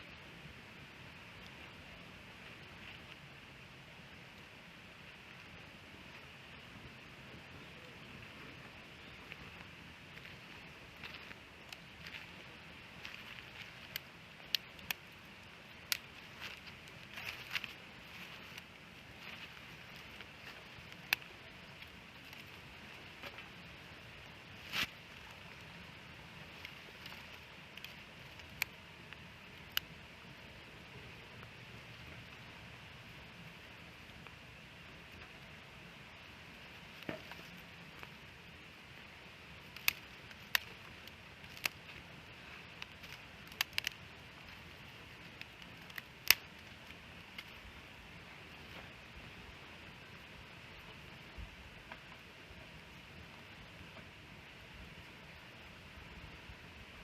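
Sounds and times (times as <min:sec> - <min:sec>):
campfire hissing: 0:00.0 - 0:57.0
fire crackling: 0:00.0 - 0:57.0
burning wood popping: 0:01.1 - 0:32.3, 0:36.2 - 0:49.0.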